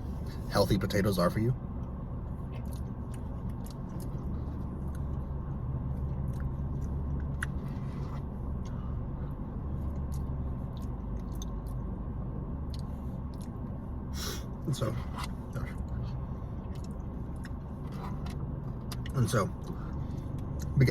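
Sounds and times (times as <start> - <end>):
steady low hum: 0.0 - 20.9
person chewing food: 2.5 - 11.9, 12.7 - 13.7, 15.0 - 20.8.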